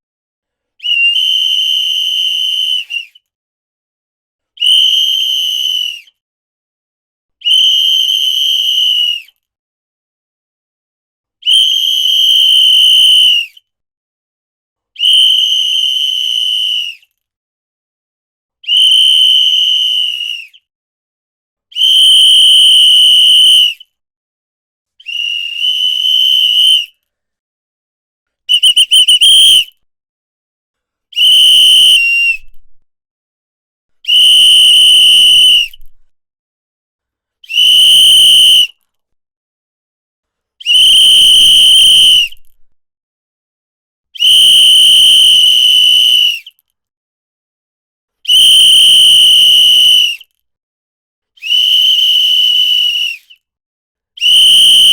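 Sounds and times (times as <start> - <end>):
shrill whistle blasts: 0.8 - 3.2, 4.6 - 6.1, 7.4 - 9.4, 11.4 - 13.6, 15.0 - 17.1, 18.6 - 20.6, 21.7 - 23.8, 25.0 - 27.0, 28.5 - 29.8, 31.2 - 32.8, 34.0 - 36.1, 37.4 - 38.8, 40.6 - 42.6, 44.2 - 46.6, 48.3 - 50.3, 51.4 - 53.4, 54.2 - 54.9
warbling whistle trill: 28.5 - 29.6.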